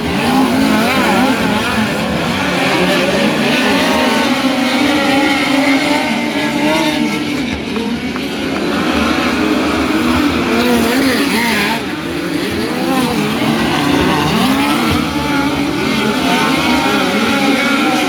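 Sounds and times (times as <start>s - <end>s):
race car engines revving: 0.0s - 18.0s.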